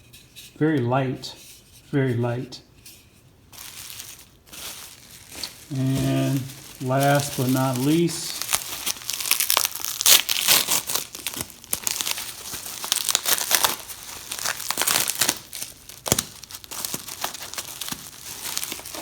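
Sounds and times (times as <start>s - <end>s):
packaging wrap crinkling: 3.5s - 19.0s.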